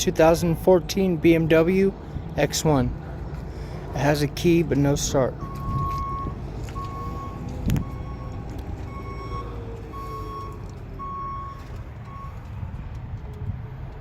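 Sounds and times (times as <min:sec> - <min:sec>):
engine rumbling: 0:00.0 - 0:14.0
reverse warning alarm beeping: 0:05.4 - 0:12.5.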